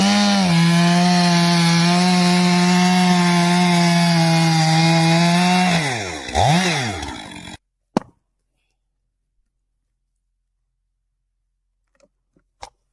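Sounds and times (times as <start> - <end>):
chainsaw cutting wood: 0.0 - 7.6.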